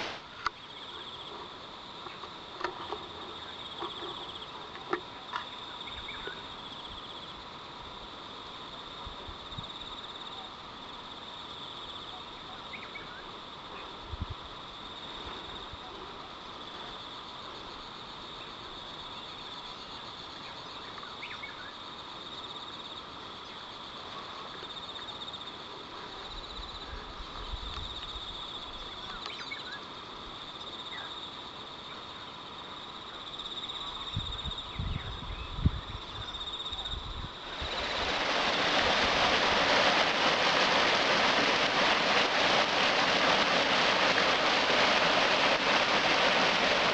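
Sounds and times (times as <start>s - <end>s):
creek water rushing: 0.0s - 0.4s, 37.4s - 46.9s
insects and frogs calling: 0.0s - 46.9s.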